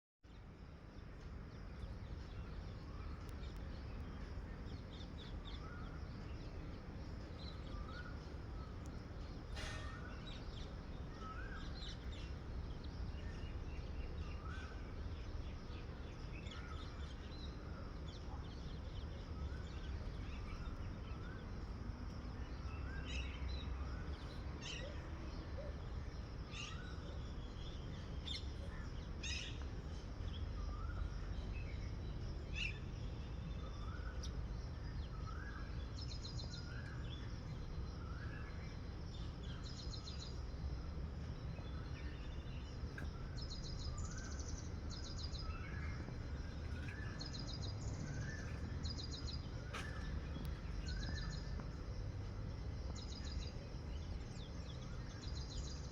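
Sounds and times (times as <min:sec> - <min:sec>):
steady low rumble: 0:36.2 - 0:55.9.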